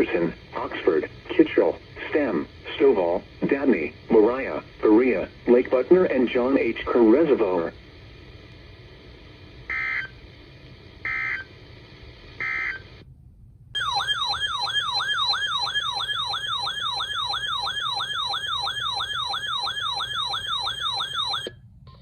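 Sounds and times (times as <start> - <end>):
warbling siren-like alert tone: 12.4 - 12.8, 13.8 - 21.6
data-burst chirps: 12.4 - 12.9.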